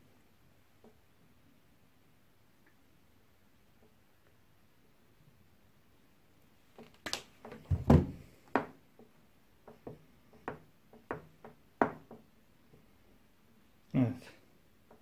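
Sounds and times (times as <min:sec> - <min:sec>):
heavy thump: 0:07.6 - 0:08.3.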